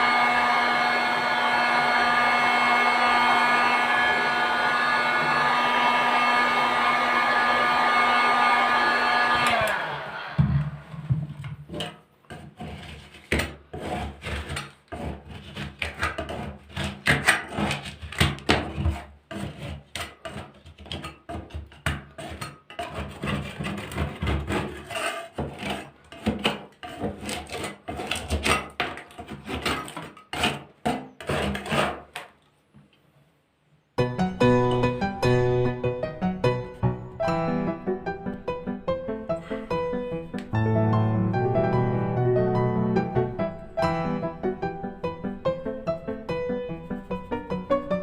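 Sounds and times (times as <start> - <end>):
hand scraper scraping paint off wood: 11.4 - 32.4.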